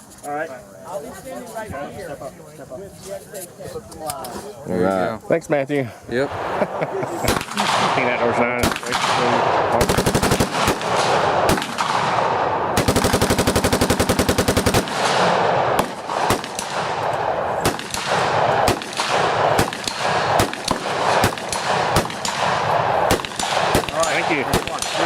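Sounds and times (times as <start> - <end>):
single gunshots: 7.2 - 25.0
full-auto gunfire burst: 7.3 - 25.0.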